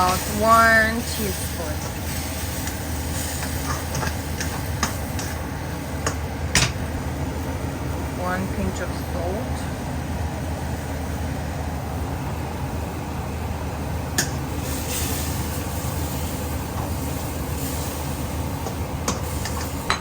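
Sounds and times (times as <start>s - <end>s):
extractor fan hum: 0.0s - 20.0s.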